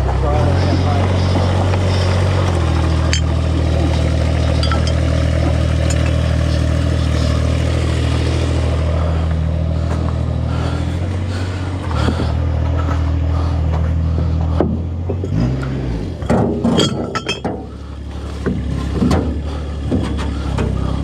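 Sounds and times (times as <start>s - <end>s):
engine running steadily: 0.0s - 21.0s
light clanks: 4.6s - 6.6s, 14.4s - 17.8s.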